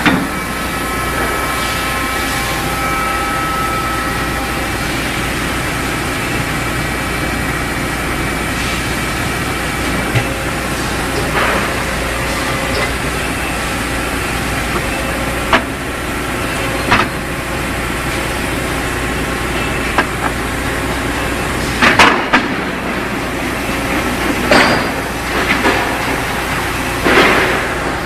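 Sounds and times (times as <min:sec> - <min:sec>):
welding machine running: 0:00.0 - 0:28.0
sharp metal clanks: 0:24.5 - 0:25.9.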